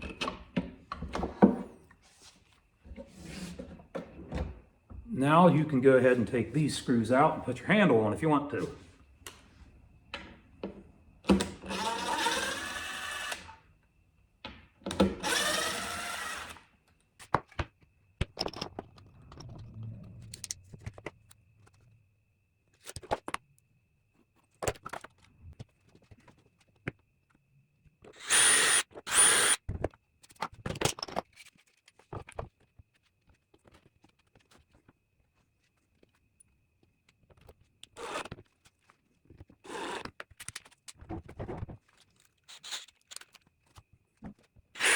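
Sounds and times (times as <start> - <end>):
cordless drill whining: 11.6 - 13.6, 15.0 - 16.6, 28.2 - 29.6.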